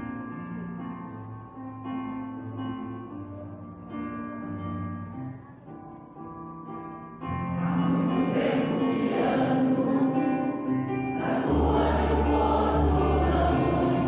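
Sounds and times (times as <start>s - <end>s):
piano chords: 0.0s - 14.0s
choir singing: 7.5s - 14.0s.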